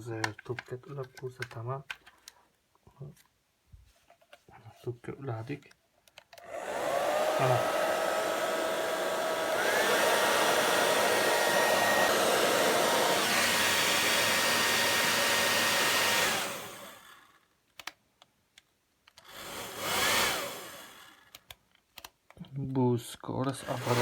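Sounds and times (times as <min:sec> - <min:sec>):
sharp clicks: 0:00.2 - 0:02.4, 0:17.7 - 0:19.3, 0:21.2 - 0:22.6
hair dryer running: 0:06.4 - 0:17.3, 0:19.2 - 0:21.2, 0:23.6 - 0:24.0.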